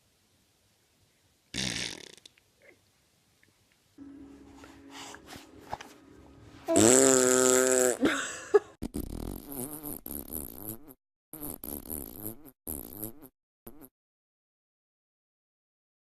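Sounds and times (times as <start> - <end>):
loud buzzy fart: 1.5 - 2.3, 6.7 - 8.0, 8.8 - 13.9
quiet wavering sounds: 4.0 - 7.3.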